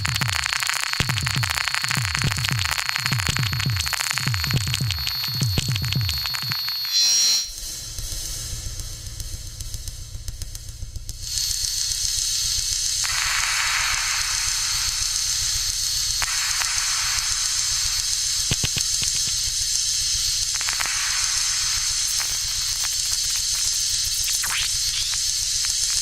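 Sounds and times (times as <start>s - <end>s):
cluster of clicks: 0.0s - 6.9s, 18.5s - 19.4s, 20.6s - 25.8s
filtered noise swells: 7.3s - 26.0s
steady high hiss: 11.2s - 26.0s.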